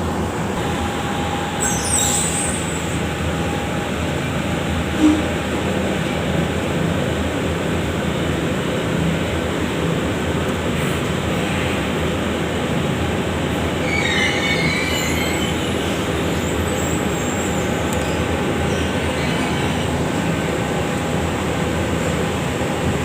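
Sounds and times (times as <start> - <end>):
high wavering squeal: 0.6 - 3.6, 13.8 - 17.8.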